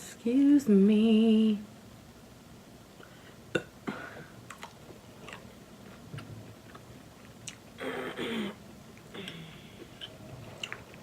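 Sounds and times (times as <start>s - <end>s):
person chewing: 4.4s - 7.8s, 8.9s - 11.0s.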